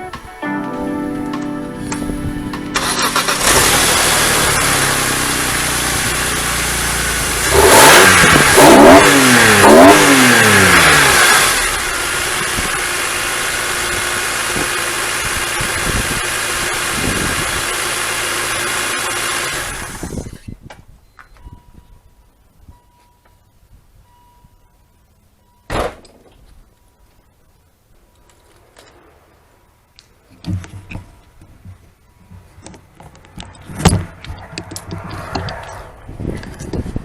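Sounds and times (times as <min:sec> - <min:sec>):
car engine idling: 0:01.8 - 0:20.0
car engine starting and revving: 0:01.8 - 0:20.3.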